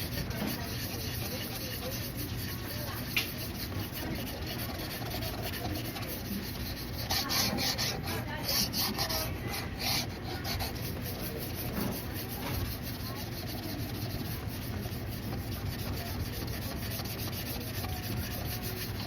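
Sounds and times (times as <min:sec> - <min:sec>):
blade scraping on whetstone: 0:00.0 - 0:19.0.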